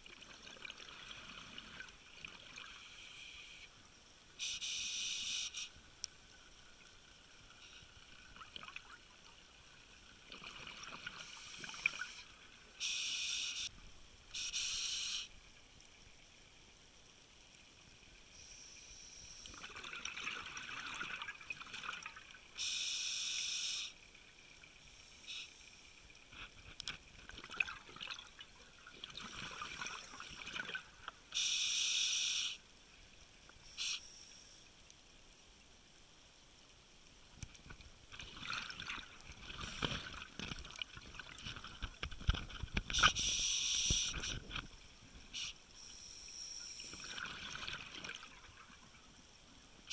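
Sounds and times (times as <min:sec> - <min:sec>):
bursts of high hiss: 0:04.4 - 0:05.8, 0:11.2 - 0:13.7, 0:14.3 - 0:15.4, 0:22.6 - 0:24.0, 0:24.9 - 0:26.1, 0:31.3 - 0:32.6, 0:33.6 - 0:34.7, 0:42.9 - 0:44.4, 0:45.3 - 0:47.0.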